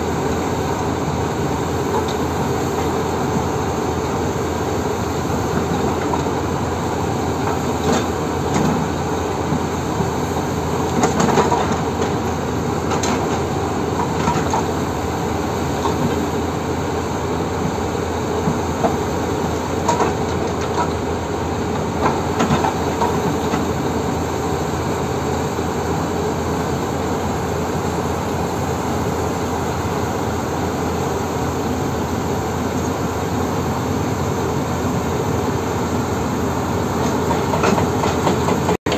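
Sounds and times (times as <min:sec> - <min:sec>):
excavator engine running: 0:00.0 - 0:38.9
hydraulic breaker pounding rock: 0:07.4 - 0:14.8, 0:19.8 - 0:24.0, 0:37.0 - 0:38.9.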